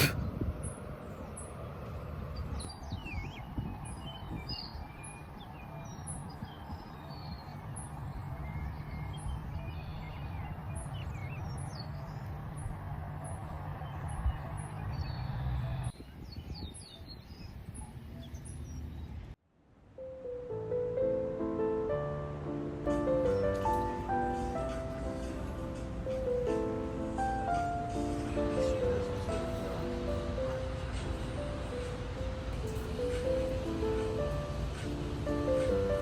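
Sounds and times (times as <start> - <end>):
small birds chirping: 0.0 - 19.4, 23.3 - 36.0
music: 20.0 - 36.0.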